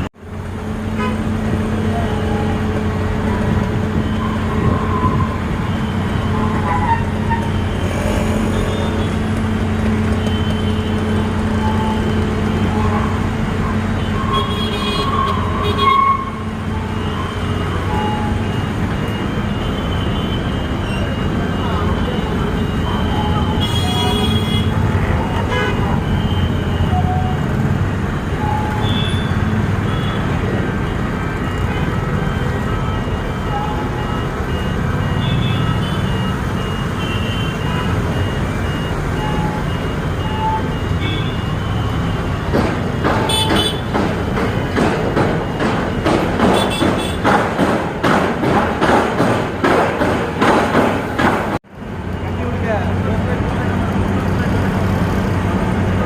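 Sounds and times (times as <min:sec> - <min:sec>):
loud street noise: 0:00.0 - 0:56.0
vehicle engines rumbling: 0:00.0 - 0:56.0
car horn toots: 0:23.3 - 0:24.8, 0:43.2 - 0:43.9, 0:46.4 - 0:47.3
irregular knocks and thuds: 0:42.5 - 0:51.6.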